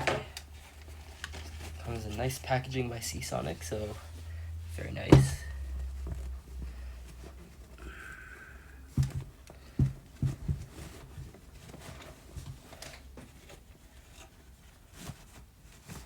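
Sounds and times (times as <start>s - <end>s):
box knocks and bumps: 5.1s - 5.6s, 8.9s - 11.4s.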